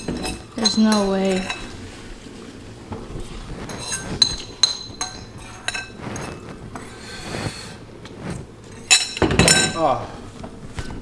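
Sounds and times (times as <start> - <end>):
utensils clinking against bowls: 0.0 - 2.0, 2.9 - 7.0, 8.4 - 11.0.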